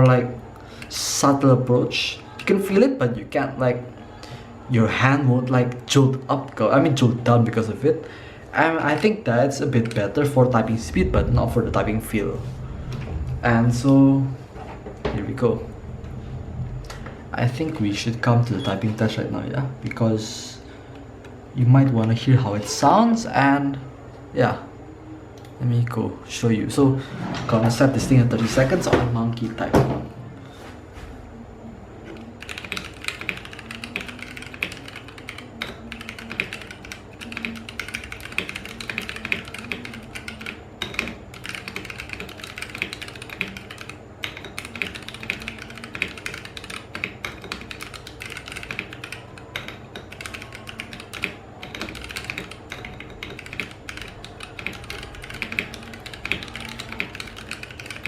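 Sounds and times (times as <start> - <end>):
quiet mechanical keyboard typing: 0.0 - 3.0, 8.6 - 11.2, 32.0 - 58.0.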